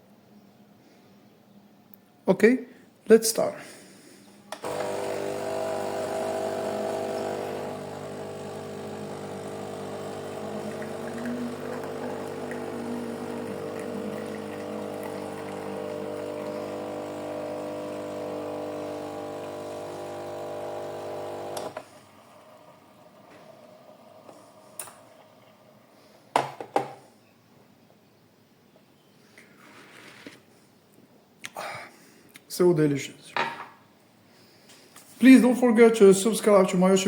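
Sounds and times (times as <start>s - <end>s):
coffee machine pump humming: 4.6s - 25.8s.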